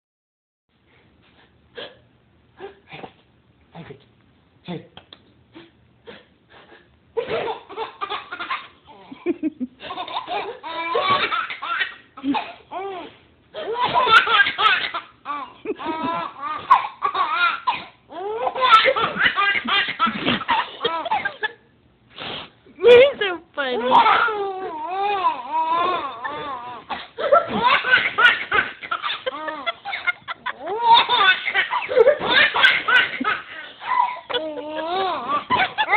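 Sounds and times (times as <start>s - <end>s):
baby laughing: 7.2s - 21.6s, 23.8s - 35.9s.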